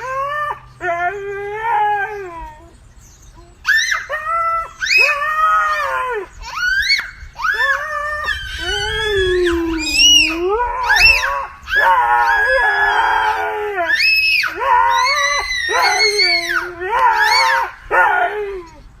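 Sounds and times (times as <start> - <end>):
dog howling: 0.0 - 2.8, 3.7 - 18.8
baby squealing: 3.7 - 12.6, 13.2 - 17.8.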